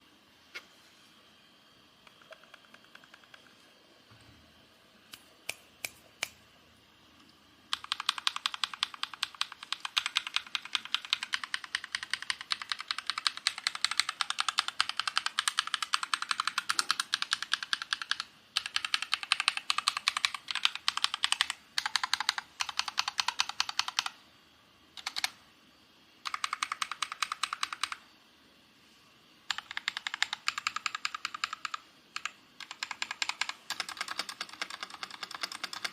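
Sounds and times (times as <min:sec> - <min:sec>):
mechanical keyboard typing: 0:02.1 - 0:03.6, 0:07.7 - 0:24.2, 0:25.0 - 0:25.4, 0:26.2 - 0:28.0, 0:29.5 - 0:35.9.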